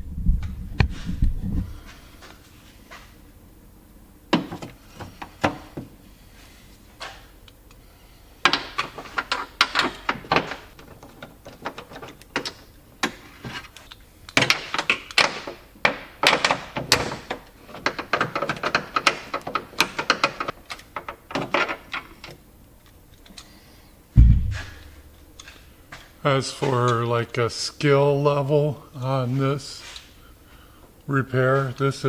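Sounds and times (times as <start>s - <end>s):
hand tools clicking and knocking: 14.4s - 22.0s.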